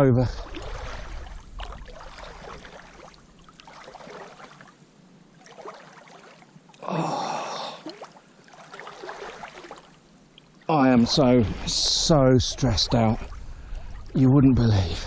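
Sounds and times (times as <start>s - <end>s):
water splashing and lapping: 0.0s - 15.0s
swimmer breathing: 6.8s - 8.7s, 13.4s - 14.1s.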